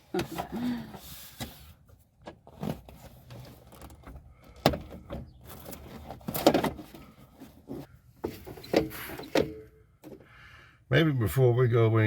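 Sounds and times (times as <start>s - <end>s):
tools clunking and rattling: 2.2s - 10.2s.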